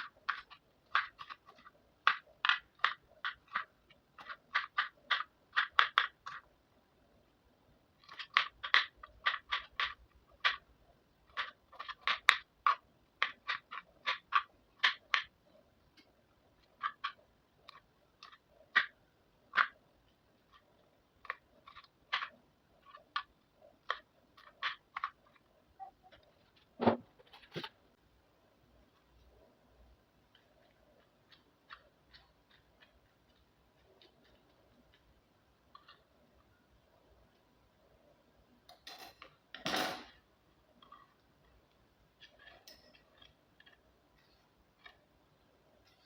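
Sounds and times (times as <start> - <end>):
knife cutting raw vegetables: 30.3 - 36.1.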